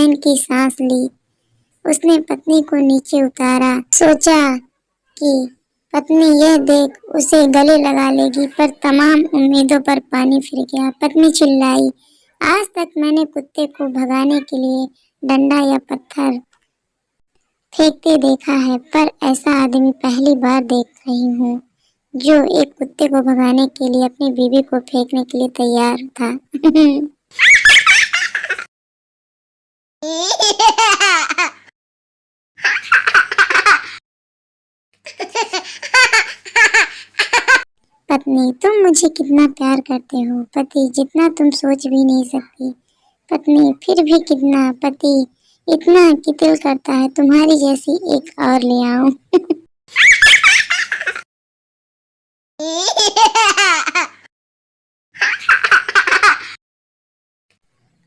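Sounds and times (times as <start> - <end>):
high-pitched laughs: 27.3 - 28.7, 32.6 - 34.0, 49.4 - 51.2, 55.2 - 56.6.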